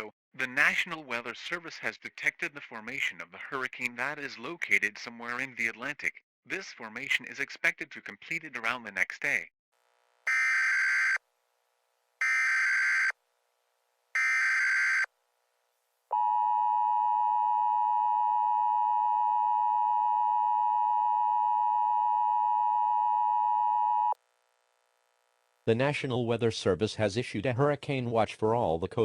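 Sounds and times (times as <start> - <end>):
two-tone alarm: 10.3 - 11.2, 12.2 - 13.2, 14.2 - 15.1, 16.1 - 24.2.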